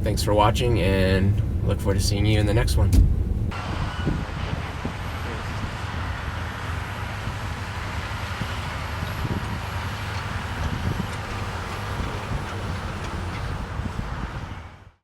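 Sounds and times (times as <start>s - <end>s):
traffic rumble: 0.0s - 15.0s
wind noise on microphone: 2.6s - 6.2s, 7.1s - 14.9s.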